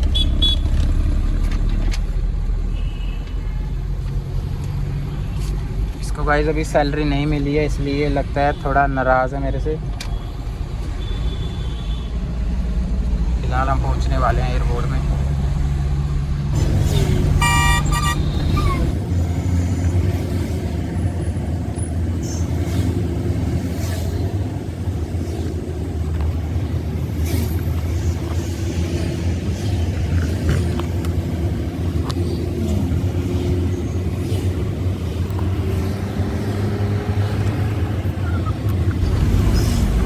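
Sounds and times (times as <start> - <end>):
truck engine drone: 0.0 - 2.7, 12.4 - 40.0.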